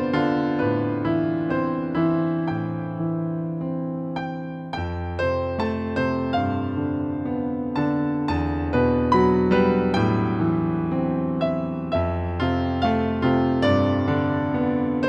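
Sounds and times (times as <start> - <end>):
gentle piano melody: 0.0 - 15.0.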